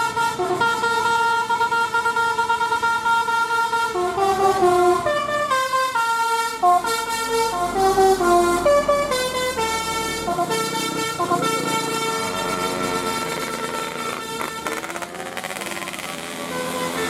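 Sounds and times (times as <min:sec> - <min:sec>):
musical air horn melody: 0:00.0 - 0:17.0.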